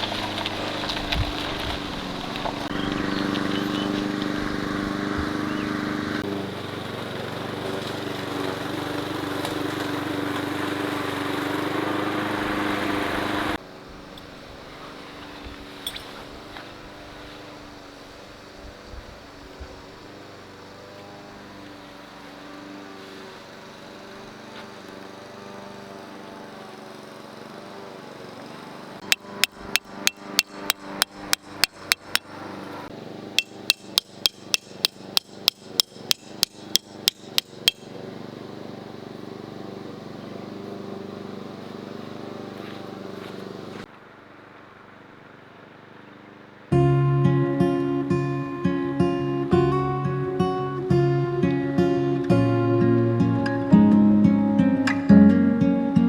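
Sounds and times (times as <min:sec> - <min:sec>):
hammer striking metal stakes: 0:29.0 - 0:32.4, 0:33.4 - 0:37.9.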